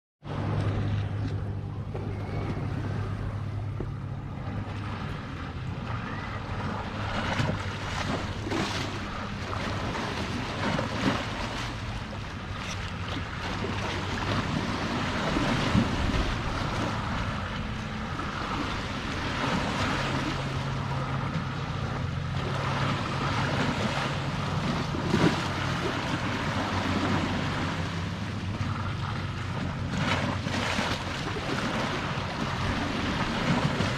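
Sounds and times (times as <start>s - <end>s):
low motor hum: 0.2s - 33.9s
sea waves washing in: 0.2s - 33.9s
wind on microphone: 0.3s - 33.9s.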